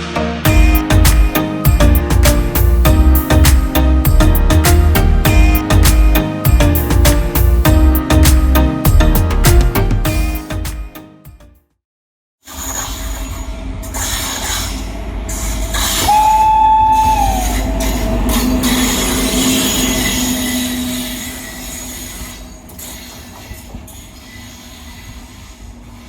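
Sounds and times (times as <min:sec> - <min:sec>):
locomotive horn: 0:16.0 - 0:21.3
rumble of train wheels on rail: 0:16.8 - 0:26.0.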